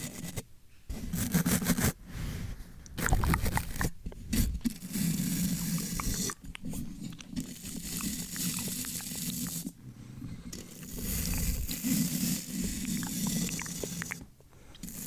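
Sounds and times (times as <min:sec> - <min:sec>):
brushing and scratching on microphone: 0:00.0 - 0:14.2
wet mouth clicks and smacks: 0:02.8 - 0:04.0, 0:05.7 - 0:09.4, 0:12.8 - 0:14.9.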